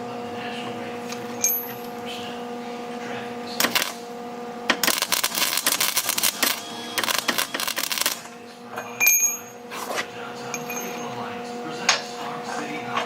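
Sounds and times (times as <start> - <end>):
steady low hum: 0.0 - 13.0
metallic clink ringing: 1.4 - 1.9, 8.8 - 9.6, 10.5 - 11.2
welder crackling: 3.6 - 8.3.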